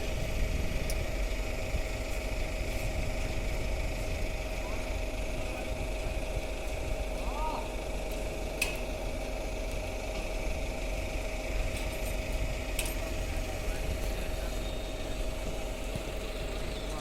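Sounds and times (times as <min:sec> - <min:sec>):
diesel engine running with whine: 0:00.0 - 0:17.0
sharp metallic clicks: 0:08.1 - 0:09.0.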